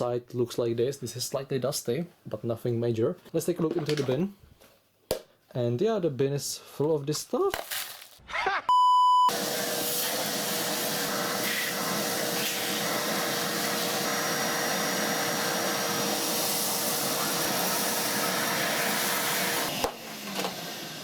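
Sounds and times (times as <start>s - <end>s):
vacuum cleaner whining: 9.3s - 21.0s.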